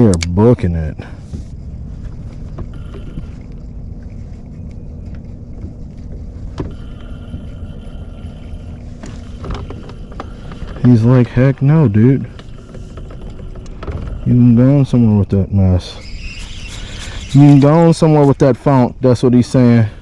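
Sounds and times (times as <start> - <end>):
sharp click: 0.0 - 0.4
boat motor humming: 0.0 - 20.0.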